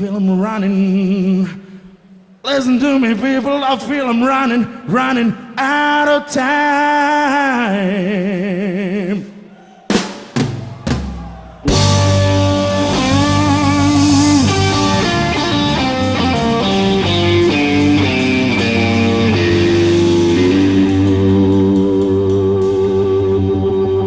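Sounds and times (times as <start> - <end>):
blues-rock band playing: 9.9 - 24.0
electric guitar soloing: 10.9 - 24.0.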